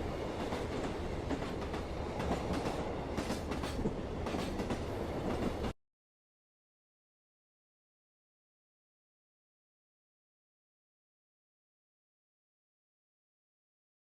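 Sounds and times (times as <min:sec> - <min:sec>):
train rumbling on track: 0:00.0 - 0:05.8
wheels clickety-clack: 0:00.1 - 0:05.7.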